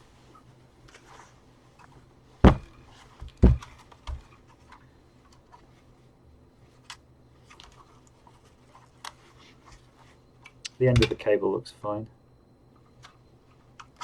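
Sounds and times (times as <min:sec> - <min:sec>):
sharp knocks on workbench: 0:02.4 - 0:03.7.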